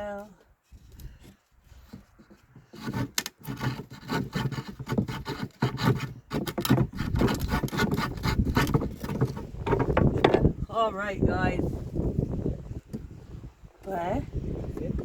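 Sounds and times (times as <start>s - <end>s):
handsaw cutting wood: 1.8s - 10.4s.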